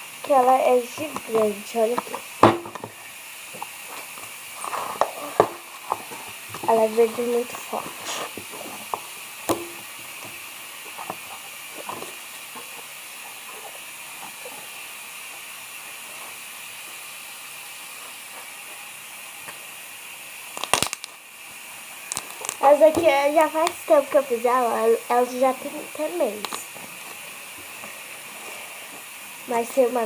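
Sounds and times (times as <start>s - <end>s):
steady background hiss: 0.0s - 30.0s
slime squished by hand: 20.6s - 21.1s
sticky clicks and pops: 20.6s - 21.2s, 22.1s - 23.8s.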